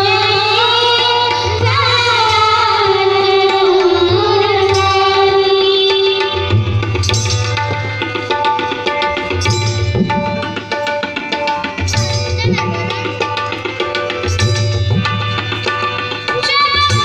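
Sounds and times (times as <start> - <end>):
sustained melody instrument: 3.0 - 17.0
hand drum beat: 6.1 - 17.0.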